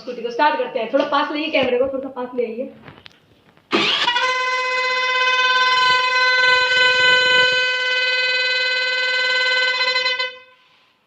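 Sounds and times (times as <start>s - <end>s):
loud steady horn tone: 3.8s - 11.0s.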